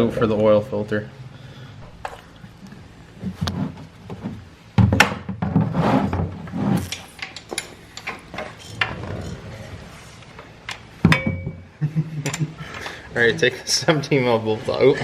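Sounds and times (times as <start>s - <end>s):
tools and metal parts clicking: 6.9s - 9.5s.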